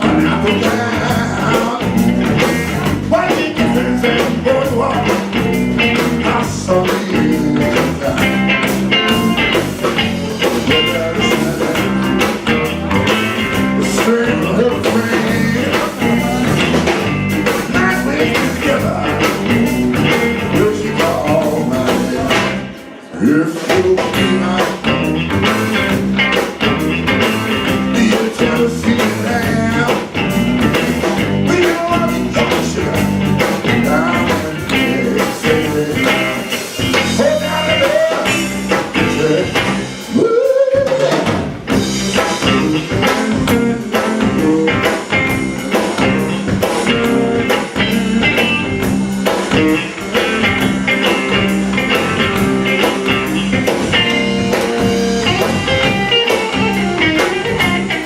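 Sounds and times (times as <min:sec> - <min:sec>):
band playing bluesy rock: 0:00.0 - 0:58.0.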